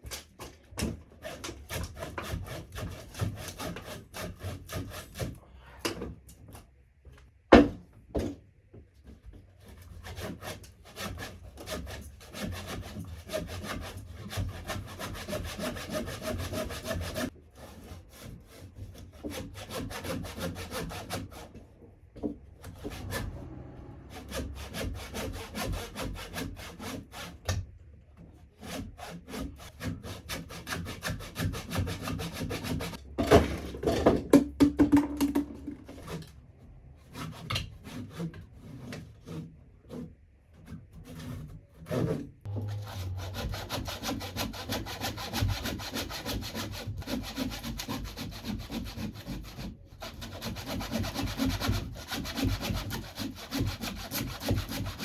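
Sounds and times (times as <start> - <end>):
handsaw cutting through log: 1.2 - 5.4, 9.8 - 21.6, 22.6 - 27.4, 28.5 - 33.0, 37.1 - 40.2, 41.0 - 55.0.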